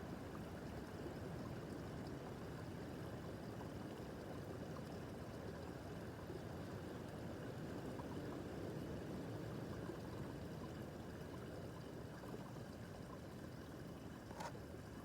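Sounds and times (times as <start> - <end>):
brook babbling over stones: 0.0 - 15.0.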